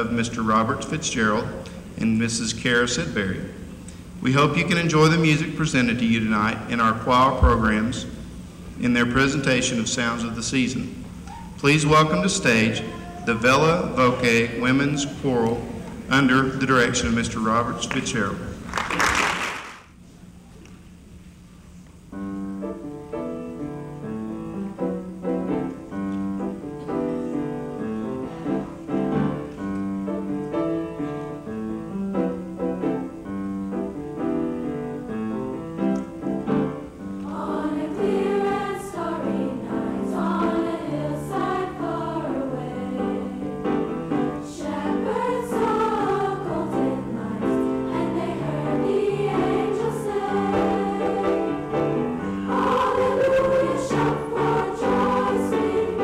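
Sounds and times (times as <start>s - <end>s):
piano chords: 22.1s - 56.0s
women's choir singing: 37.2s - 56.0s.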